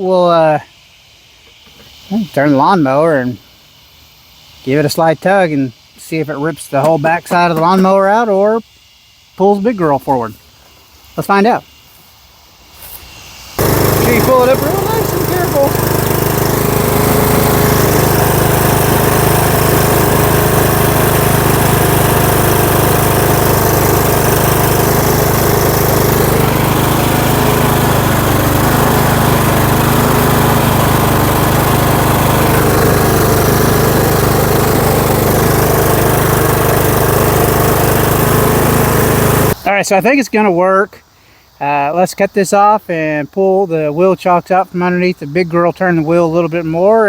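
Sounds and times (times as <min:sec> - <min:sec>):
riding lawn mower engine running: 0:04.7 - 0:08.3, 0:13.6 - 0:39.9.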